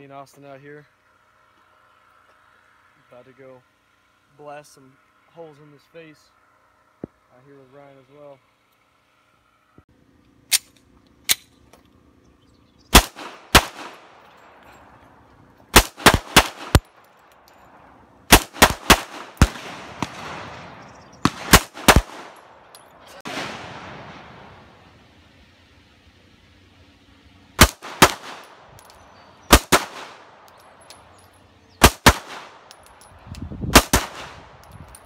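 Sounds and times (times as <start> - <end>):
gunshots echoing: 12.9 - 14.2, 15.7 - 16.9, 18.3 - 24.6, 27.6 - 28.7, 29.4 - 30.6, 31.8 - 32.8, 33.7 - 34.5.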